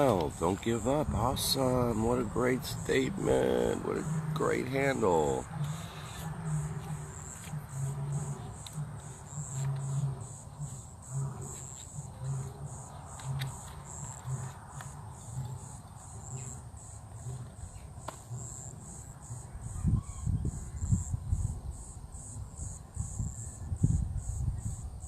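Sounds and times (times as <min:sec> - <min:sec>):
lions roaring: 0:00.0 - 0:17.8
crickets chirping: 0:00.0 - 0:25.0.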